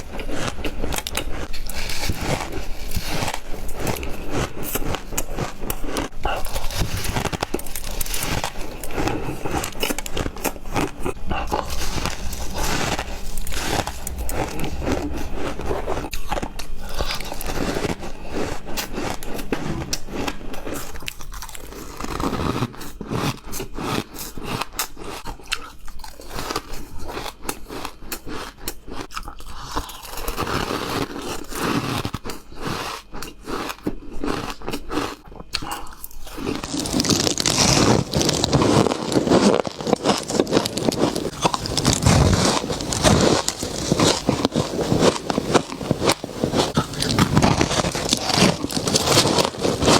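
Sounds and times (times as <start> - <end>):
ice being chewed: 0.0 - 49.9.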